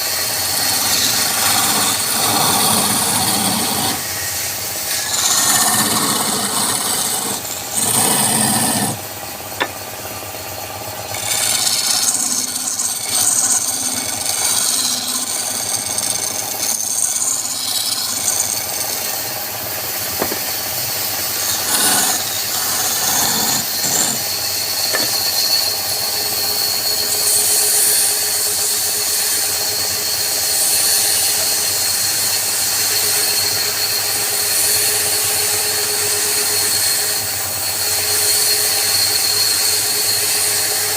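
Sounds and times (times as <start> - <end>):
turning tool rasping on wood: 0.2 - 10.0, 11.0 - 31.6
steady high whine: 17.4 - 31.5.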